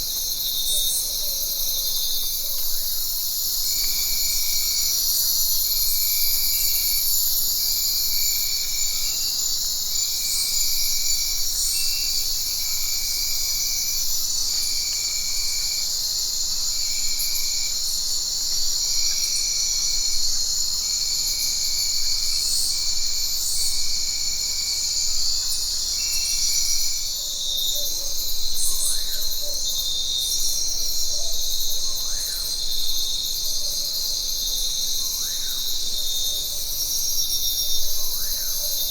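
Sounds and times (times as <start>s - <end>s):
insects chorus: 0.0s - 38.9s.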